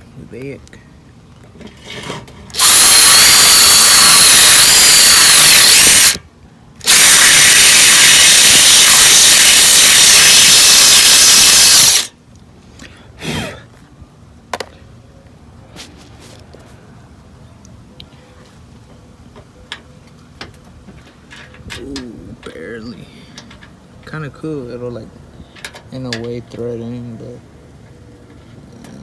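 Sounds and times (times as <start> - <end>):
power drill whining: 2.5 - 6.2, 6.8 - 12.1.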